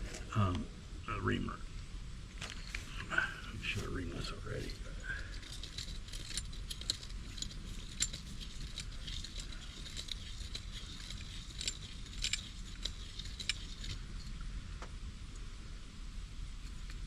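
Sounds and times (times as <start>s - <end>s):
steady low hum: 0.0s - 17.0s
metallic clicks and scrapes of tools: 2.4s - 14.4s, 16.6s - 17.0s.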